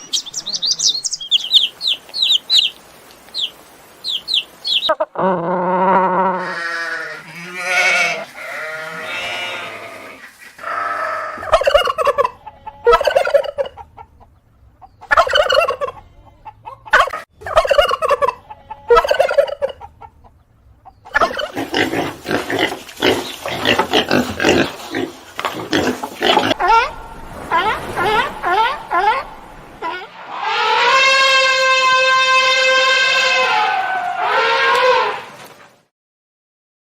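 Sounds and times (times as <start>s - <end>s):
poultry calling: 6.3s - 35.5s.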